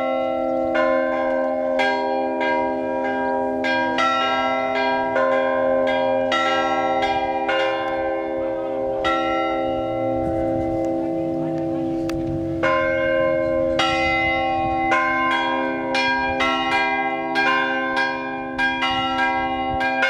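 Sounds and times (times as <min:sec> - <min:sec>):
large low bells ringing: 0:00.0 - 0:20.0
small church bells struck: 0:00.0 - 0:20.0.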